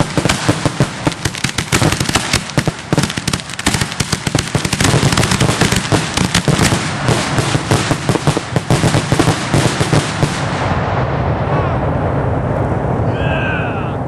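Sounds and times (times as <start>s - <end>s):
fireworks bangs and crackles: 0.0s - 13.1s.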